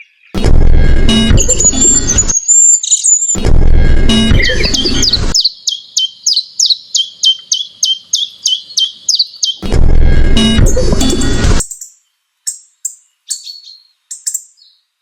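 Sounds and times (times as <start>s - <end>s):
loud music: 0.4s - 2.3s, 3.4s - 5.4s, 9.6s - 11.6s.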